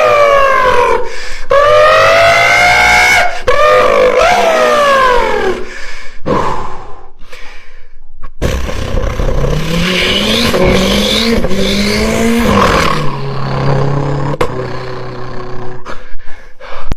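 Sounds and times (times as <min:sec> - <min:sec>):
beatbox imitating car engine: 0:08.4 - 0:16.0.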